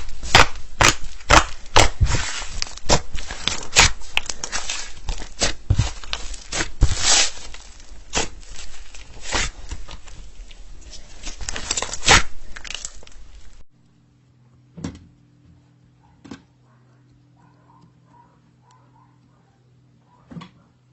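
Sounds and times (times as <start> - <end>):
slime crackling and popping: 0.0 - 13.6.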